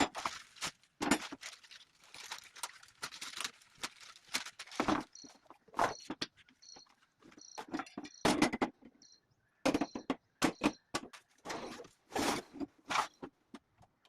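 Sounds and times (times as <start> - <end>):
packaging rustling: 0.0 - 7.3
squeaking packaging: 0.0 - 8.2, 10.8 - 13.4.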